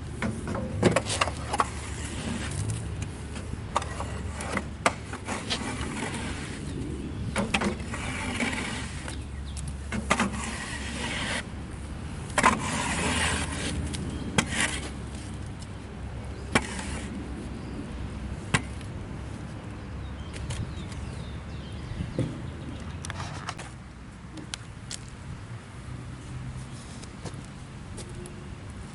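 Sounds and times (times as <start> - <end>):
scraping: 0.3 - 11.5, 12.2 - 15.8.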